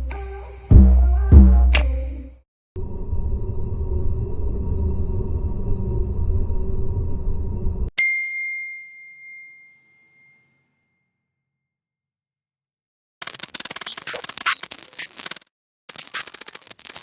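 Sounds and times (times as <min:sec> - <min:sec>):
low rumbling drone: 0:02.8 - 0:07.9
high bell-like ding: 0:08.0 - 0:11.0
scratchy crackling noise: 0:13.2 - 0:17.0.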